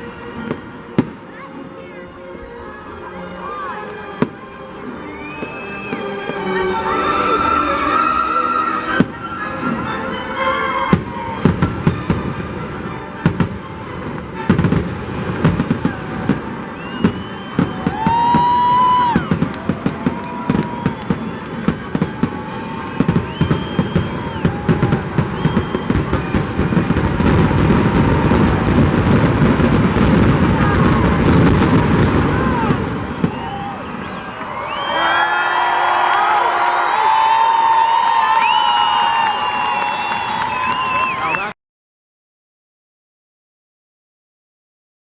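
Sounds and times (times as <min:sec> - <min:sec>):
music: 0:00.0 - 0:34.4
fireworks bangs and crackles: 0:00.3 - 0:01.4, 0:08.9 - 0:09.8, 0:10.9 - 0:34.1
fireworks whistling: 0:05.0 - 0:09.5, 0:14.4 - 0:35.0.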